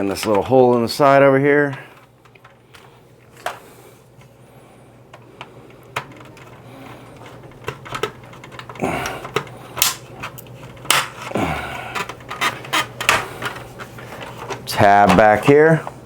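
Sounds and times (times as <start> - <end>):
plastic scraping rasps: 5.9 - 15.4.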